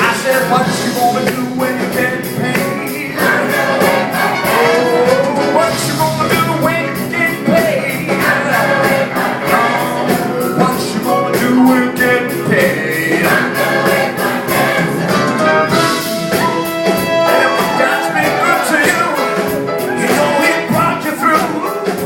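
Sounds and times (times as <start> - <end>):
band playing steady beat: 0.0 - 22.0
gospel choir singing: 0.0 - 22.0.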